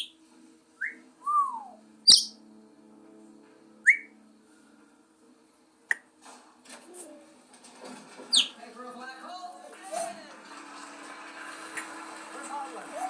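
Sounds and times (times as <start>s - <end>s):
parrot whistling: 0.8s - 2.4s, 3.9s - 4.1s, 8.3s - 8.5s
parrot chirping: 2.0s - 2.4s, 3.9s - 4.1s, 8.3s - 8.6s.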